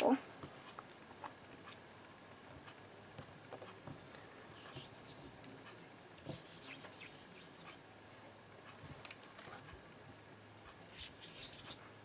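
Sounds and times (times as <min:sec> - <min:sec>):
hands rolling modelling clay: 0:03.8 - 0:05.5, 0:06.2 - 0:07.8, 0:10.8 - 0:11.8.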